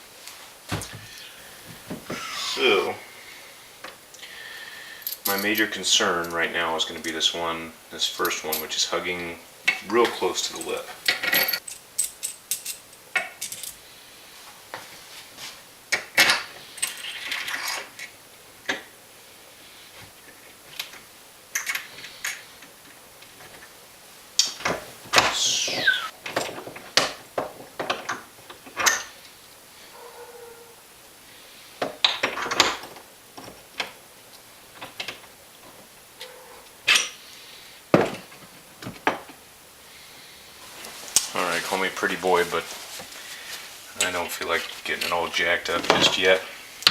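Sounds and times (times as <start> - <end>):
metal hardware clinking: 5.0 - 7.2, 8.2 - 8.8, 9.7 - 13.8.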